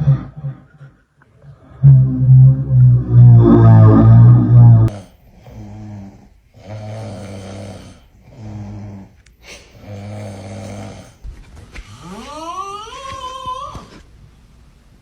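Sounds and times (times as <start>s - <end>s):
rhythmic snoring: 0.0s - 11.2s.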